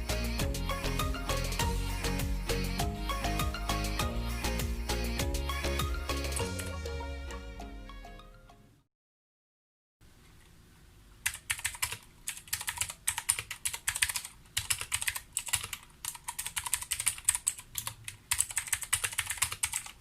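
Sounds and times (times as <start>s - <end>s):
typing on mechanical keyboard: 11.2s - 20.0s.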